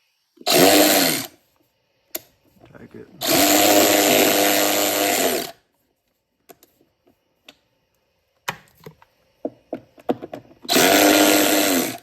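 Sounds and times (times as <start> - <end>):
cordless ratchet motor running: 3.2 - 5.5, 10.7 - 12.0.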